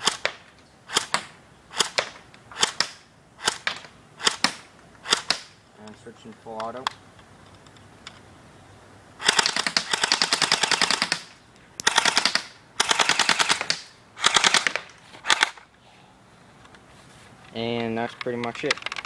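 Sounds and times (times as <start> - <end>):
airsoft rifle firing bursts: 0.0 - 5.6, 9.2 - 15.6.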